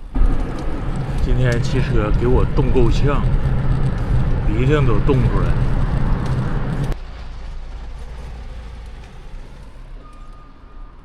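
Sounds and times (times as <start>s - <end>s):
traffic noise: 0.0s - 11.0s
wind: 0.0s - 11.0s.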